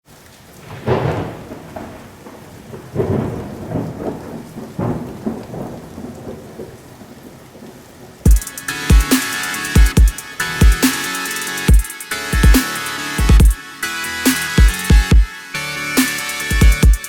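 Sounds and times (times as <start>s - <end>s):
steady rain: 0.0s - 17.0s
thunder rumbling: 0.6s - 13.4s
electronic music with heavy bass: 8.3s - 17.0s.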